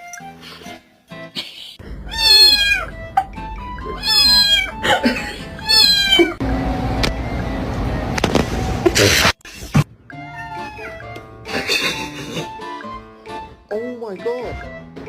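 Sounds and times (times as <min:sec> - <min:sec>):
background music: 0:00.0 - 0:08.4, 0:09.9 - 0:15.0
cat meowing: 0:02.0 - 0:03.0, 0:03.8 - 0:04.8, 0:05.6 - 0:06.4, 0:10.1 - 0:11.2.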